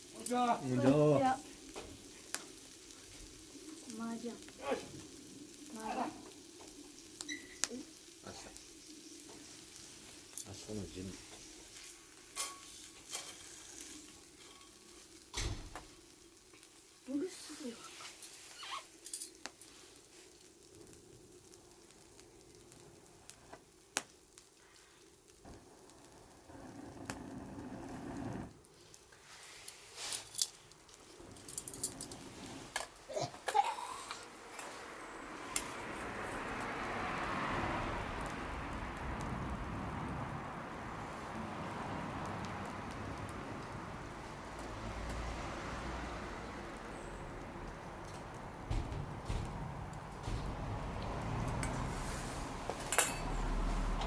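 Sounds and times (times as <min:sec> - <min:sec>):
campfire crackling: 0:00.0 - 0:54.0
fire sharp pop: 0:15.3 - 0:16.0.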